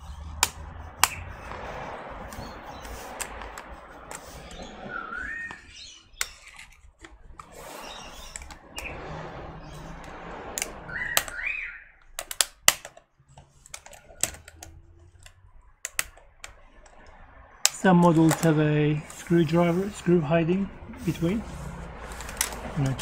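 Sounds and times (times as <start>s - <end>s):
plastic scraping and rubbing: 0.0s - 20.2s, 20.8s - 23.0s
plastic clicks and taps: 0.4s - 1.2s, 12.1s - 18.5s.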